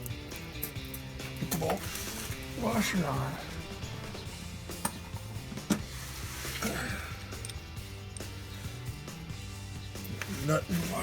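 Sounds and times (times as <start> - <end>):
background music with low notes: 0.0 - 11.0.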